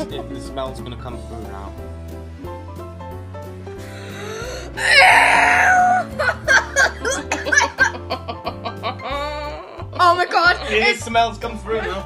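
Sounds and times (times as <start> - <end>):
background music with bass line: 0.0 - 12.0
person shrieking: 4.2 - 6.2
laughter and squeals: 4.9 - 10.0.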